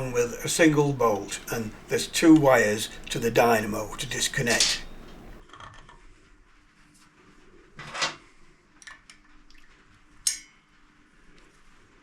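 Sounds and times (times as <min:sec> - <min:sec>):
spanner and metal parts handled: 0:04.0 - 0:05.4.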